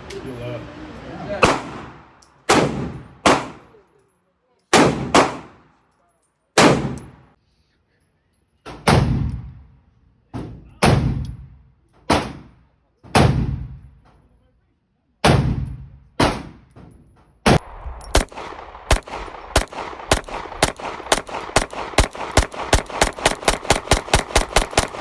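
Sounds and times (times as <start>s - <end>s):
gunshots with echo: 1.4s - 3.8s, 4.7s - 5.6s, 6.6s - 7.2s, 17.5s - 25.0s.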